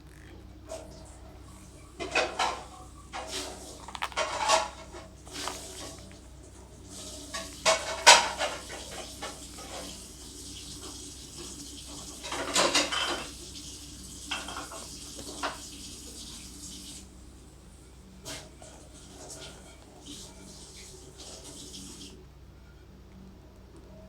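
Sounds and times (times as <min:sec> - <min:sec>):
hard objects clattering: 0:03.8 - 0:05.9.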